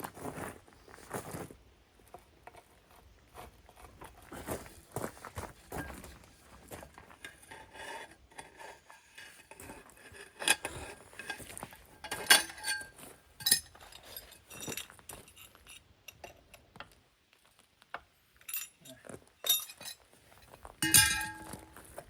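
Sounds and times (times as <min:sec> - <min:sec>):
wrenches clinking on metal: 0:07.1 - 0:16.5, 0:18.4 - 0:21.9
sharp metallic clanks: 0:10.4 - 0:16.4, 0:20.8 - 0:21.8.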